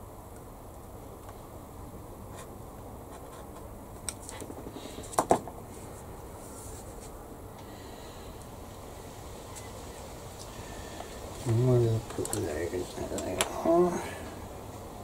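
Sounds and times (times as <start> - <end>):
steady background hiss: 0.0 - 15.0
soft scratches: 5.7 - 7.2.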